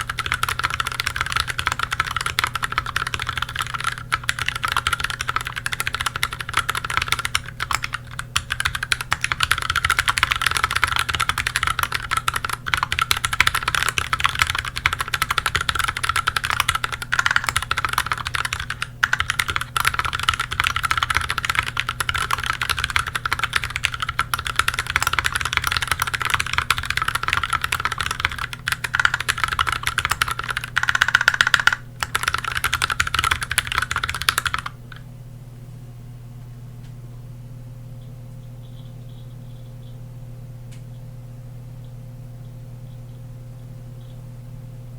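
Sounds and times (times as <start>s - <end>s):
mechanical keyboard typing: 0.0s - 35.0s.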